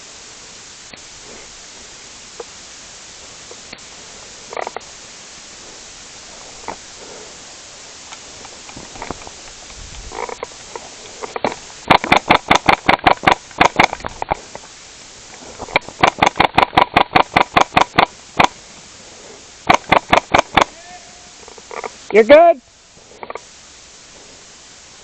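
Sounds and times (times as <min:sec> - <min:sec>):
airsoft rifle firing rapid shots: 0:11.9 - 0:14.0, 0:15.8 - 0:18.6, 0:19.7 - 0:20.8.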